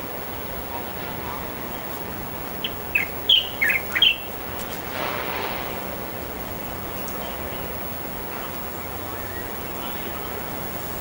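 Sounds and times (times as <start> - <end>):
steady background hiss: 0.0 - 11.0
bird chirping: 2.6 - 4.3.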